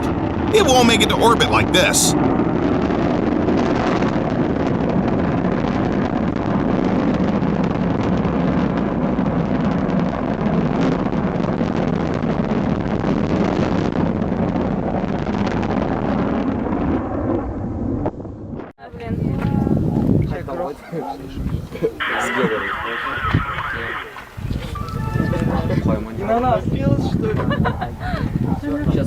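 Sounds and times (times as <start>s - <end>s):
rocket engines rumbling: 0.0s - 2.2s, 21.9s - 27.2s.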